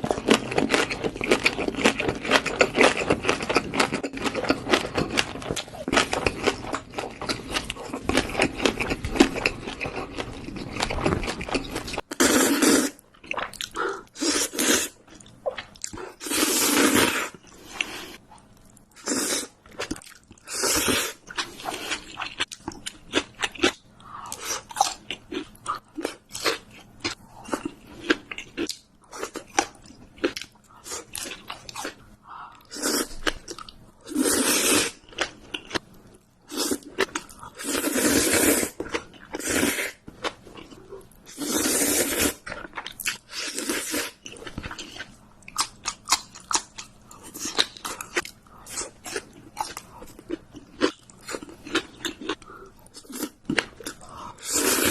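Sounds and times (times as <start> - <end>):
chewing noodles: 0.0 - 32.0, 32.6 - 54.9
slurping noodles: 12.1 - 13.0, 13.7 - 15.0, 16.2 - 18.2, 34.1 - 35.0, 37.6 - 38.8, 39.4 - 40.0, 41.3 - 42.5, 54.4 - 54.9.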